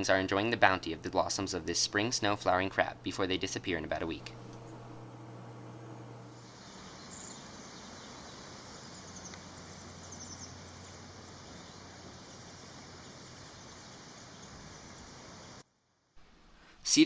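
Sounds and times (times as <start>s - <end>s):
outdoor background hiss: 0.0s - 17.0s.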